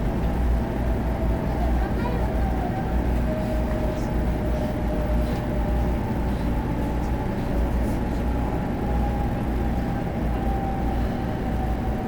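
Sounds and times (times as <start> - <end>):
train cabin low rumble: 0.0 - 12.0.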